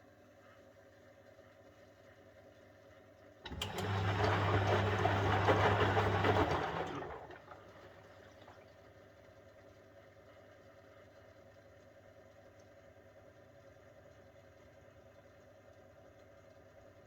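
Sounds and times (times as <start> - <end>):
washing machine humming and swishing: 3.4 - 10.6.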